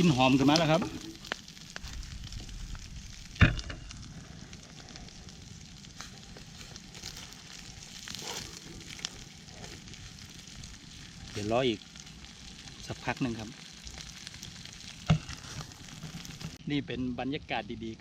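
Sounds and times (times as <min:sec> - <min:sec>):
pork sizzling on a grill: 0:00.0 - 0:18.0.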